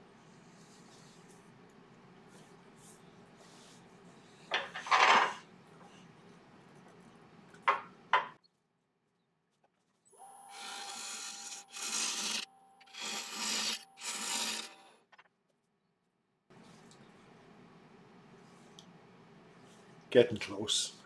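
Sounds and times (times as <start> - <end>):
turning tool rasping on wood: 10.5 - 14.9.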